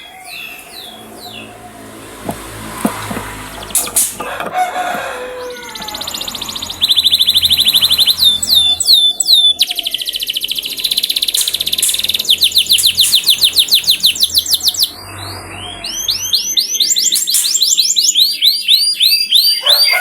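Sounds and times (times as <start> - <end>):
canary singing trills: 0.0 - 20.0
downward-sweeping whistles: 5.4 - 11.2.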